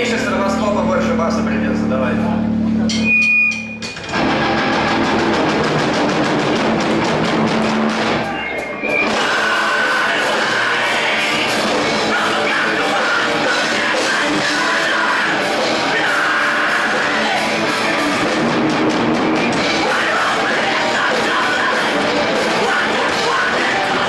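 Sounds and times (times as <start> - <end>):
rock band playing live: 2.5 - 24.0.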